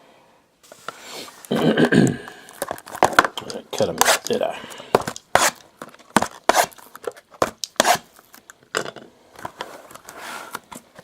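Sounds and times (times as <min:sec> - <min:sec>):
sharp crinkles rips and taps: 0:02.3 - 0:04.4, 0:05.0 - 0:08.6
card packs torn open: 0:02.4 - 0:08.4.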